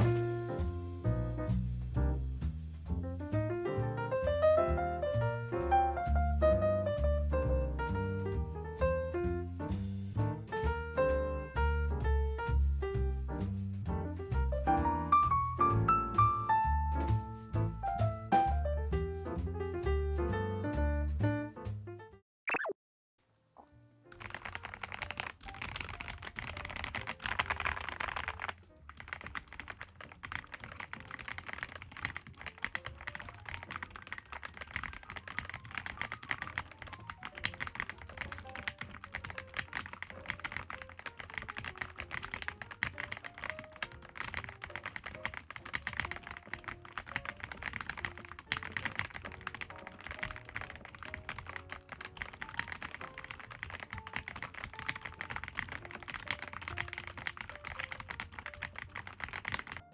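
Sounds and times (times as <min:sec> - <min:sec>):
quiet background music: 0:00.0 - 0:20.4, 0:23.6 - 0:59.9
mechanical keyboard typing: 0:24.1 - 0:59.9.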